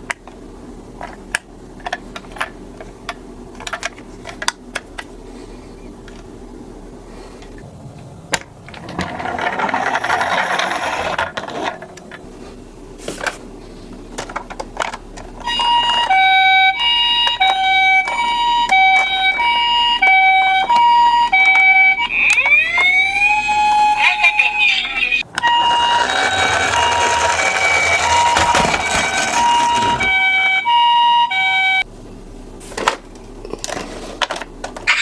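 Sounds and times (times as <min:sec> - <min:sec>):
rattling noise: 0:08.0 - 0:12.2, 0:25.2 - 0:30.8
rising siren wail: 0:15.4 - 0:31.8
toy hi-lo siren: 0:15.4 - 0:31.8.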